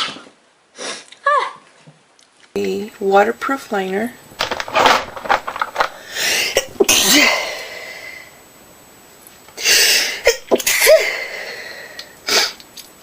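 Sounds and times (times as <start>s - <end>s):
woman sneezing: 6.6s - 7.5s, 10.2s - 11.4s.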